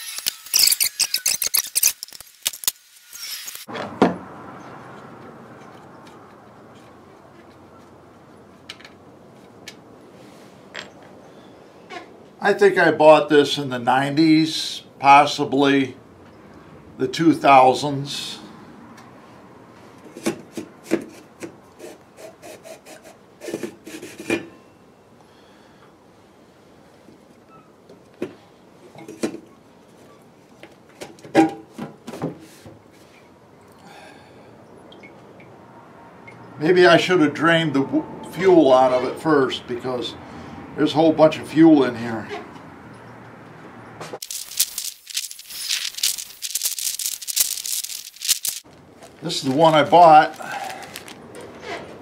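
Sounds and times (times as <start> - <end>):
metal parts clinking and rattling: 44.2 - 48.6.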